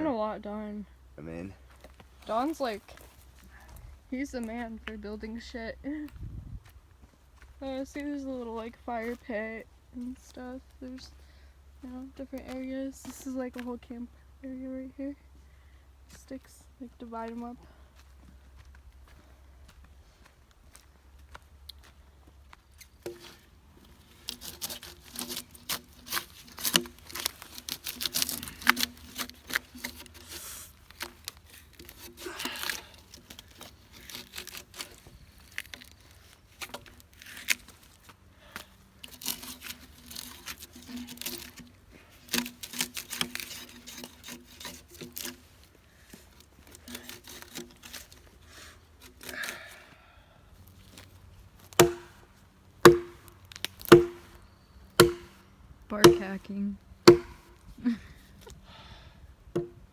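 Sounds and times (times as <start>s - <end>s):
bark crackling and splintering: 24.0s - 37.9s, 39.0s - 45.6s, 55.0s - 55.3s
sharp chopping strikes: 51.8s - 52.2s, 52.8s - 54.4s, 55.0s - 55.4s, 56.0s - 57.6s.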